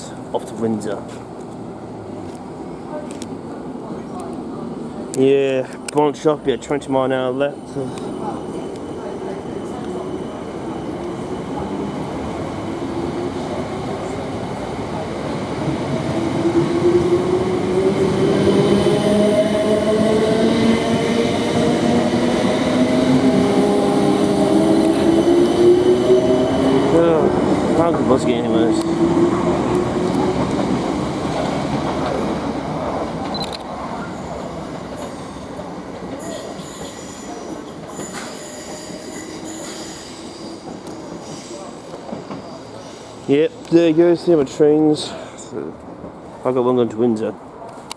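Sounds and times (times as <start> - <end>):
rail rumble: 7.6 - 38.8.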